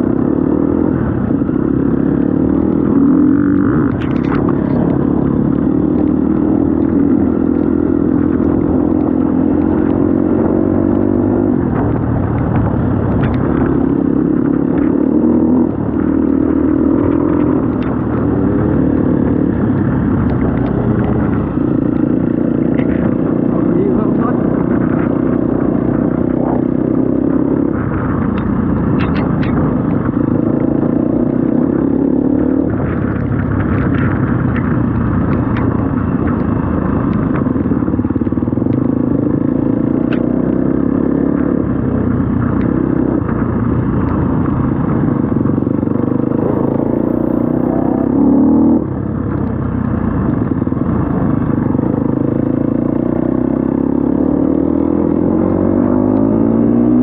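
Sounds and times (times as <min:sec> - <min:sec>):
dirt bike engine revving: 0:45.1 - 0:48.9.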